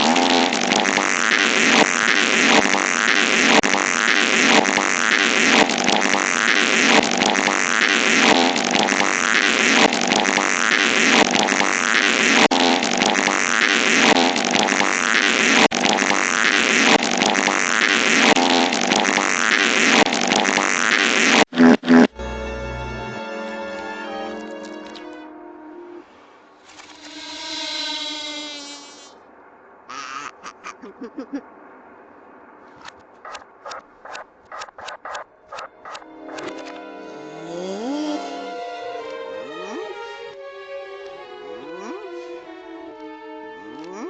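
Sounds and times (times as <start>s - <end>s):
reversed fart buzzing: 0.0s - 22.8s, 26.9s - 29.3s
music with held tones: 22.1s - 26.1s, 36.0s - 44.0s.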